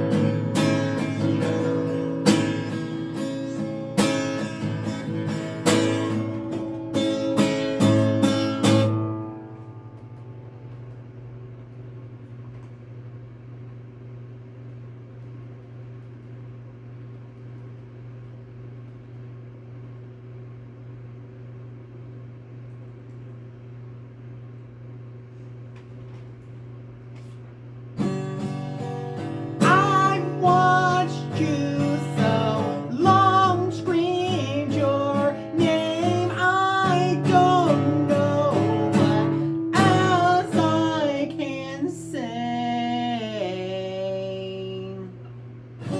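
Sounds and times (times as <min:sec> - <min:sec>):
guitar melody line: 0:00.0 - 0:10.7, 0:28.0 - 0:43.8
acoustic guitar chords: 0:00.0 - 0:11.0, 0:28.0 - 0:45.9.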